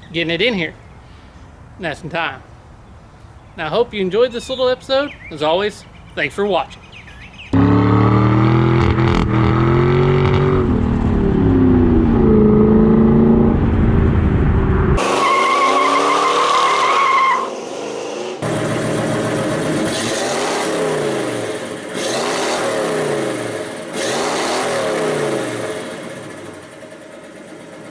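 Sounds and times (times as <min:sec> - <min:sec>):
car engine revving: 0:07.5 - 0:26.7
tyre squeal: 0:15.0 - 0:17.6.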